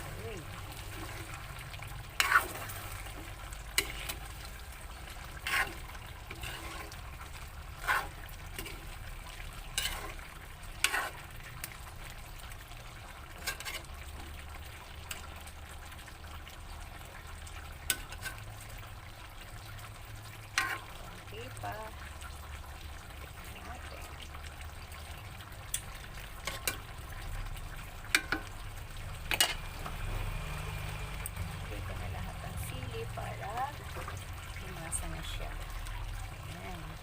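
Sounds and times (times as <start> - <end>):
utensil scraping a pan: 0.0 - 11.8, 13.2 - 14.1, 17.8 - 18.6, 20.5 - 21.1, 25.7 - 26.9, 29.3 - 30.0
food sizzling in a pan: 0.0 - 37.0.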